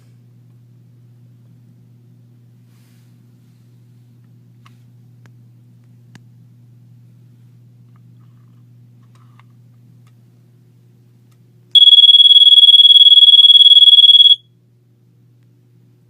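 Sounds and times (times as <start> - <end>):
faint low hum: 0.0 - 16.0
smoke detector alarm tone: 11.8 - 14.5.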